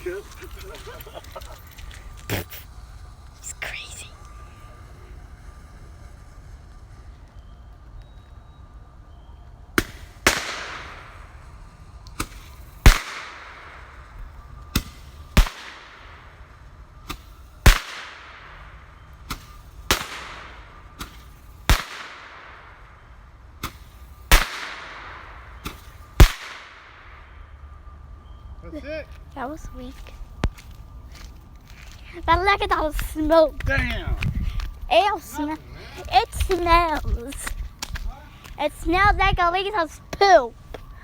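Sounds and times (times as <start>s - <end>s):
firework hiss: 0.0s - 6.9s.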